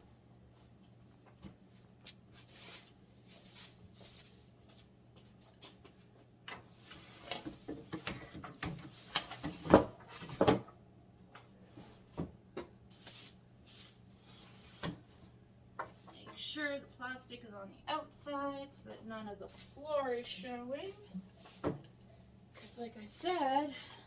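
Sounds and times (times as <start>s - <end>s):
plastic sheeting rustling: 19.4s - 21.7s.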